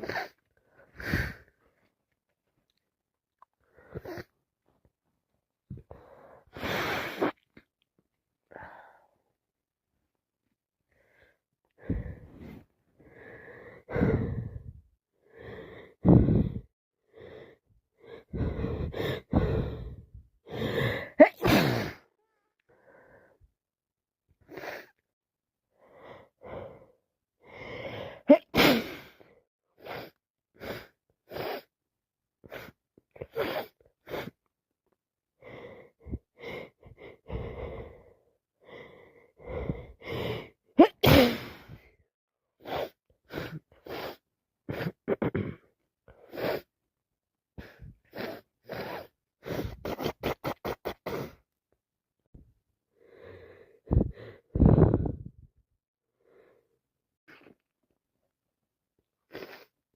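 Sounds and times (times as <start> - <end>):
wheezy gasping breaths: 0.0 - 1.8, 5.8 - 7.4, 10.9 - 22.1, 25.8 - 31.7, 35.4 - 42.0, 42.6 - 46.7, 47.6 - 51.4, 53.0 - 55.3, 59.3 - 59.8
person sneezing: 21.2 - 22.0, 28.3 - 29.0, 40.8 - 41.7.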